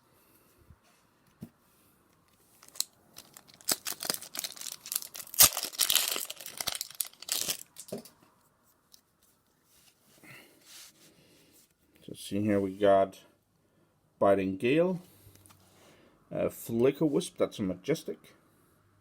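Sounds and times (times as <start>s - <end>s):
wrapper tearing and crinkling: 2.6s - 8.0s.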